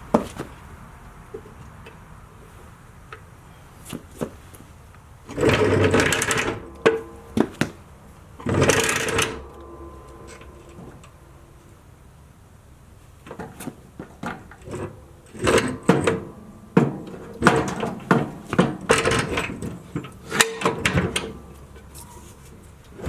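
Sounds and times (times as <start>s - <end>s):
rapid metal rattling: 5.2s - 12.0s
metal clicks and knocks: 5.3s - 11.7s, 13.2s - 23.0s.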